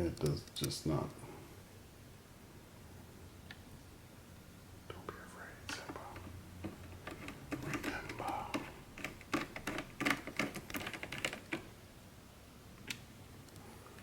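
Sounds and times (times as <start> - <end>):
small clicks handling computer parts: 6.2 - 11.7.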